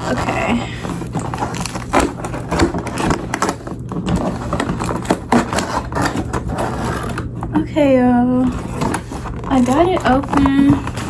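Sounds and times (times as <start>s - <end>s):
packaging being torn open: 0.0s - 7.3s.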